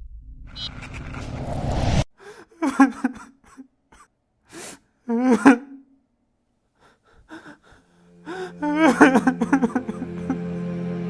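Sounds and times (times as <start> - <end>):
person gasping cries: 2.2 - 3.6, 4.5 - 5.8, 6.9 - 10.4.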